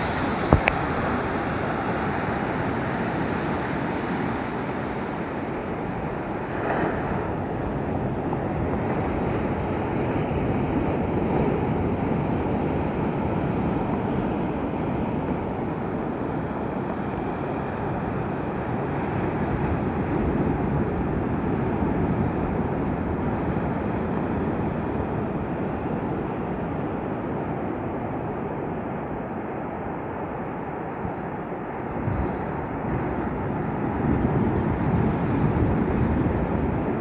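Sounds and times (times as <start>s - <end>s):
waves breaking on beach: 0.0s - 37.0s.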